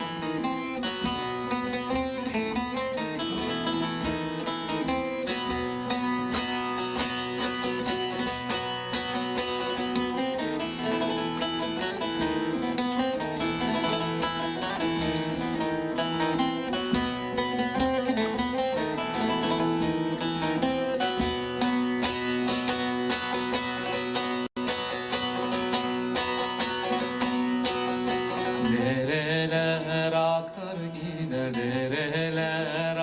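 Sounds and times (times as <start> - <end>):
plucked string instrument music: 0.0 - 33.0.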